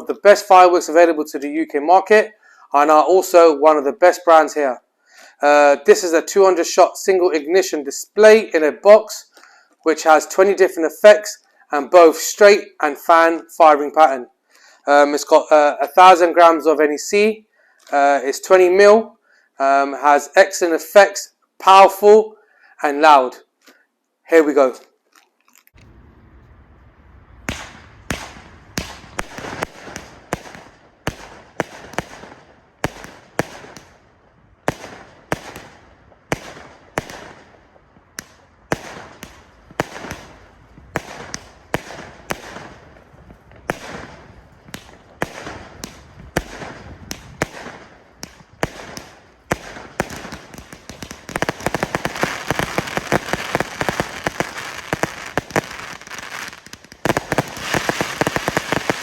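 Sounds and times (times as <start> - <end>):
dense firework crackle: 25.8 - 59.0
firework cake bangs: 27.5 - 33.9, 38.2 - 59.0.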